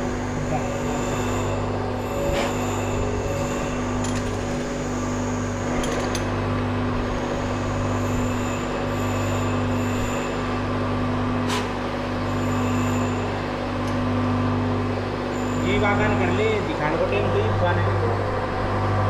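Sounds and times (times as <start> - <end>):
lathe humming: 0.0 - 19.0.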